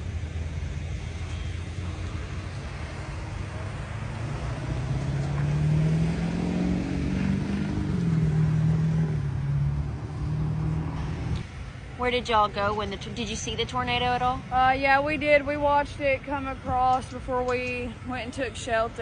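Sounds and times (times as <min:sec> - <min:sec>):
vehicle engine speeding up: 0:00.0 - 0:11.5.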